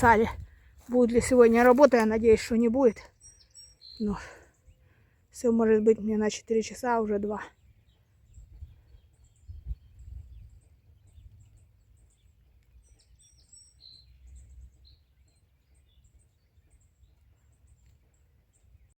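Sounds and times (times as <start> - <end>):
low wind rumble: 0.0 - 3.0, 7.0 - 12.5
faint bird chirps: 2.3 - 6.0, 7.3 - 19.0.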